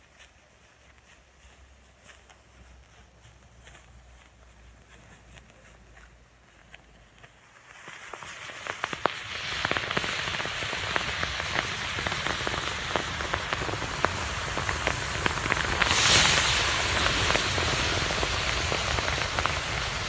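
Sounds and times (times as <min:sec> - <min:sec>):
match heads flaring and crackling: 0:07.5 - 0:20.0
sharp pops: 0:07.7 - 0:20.0.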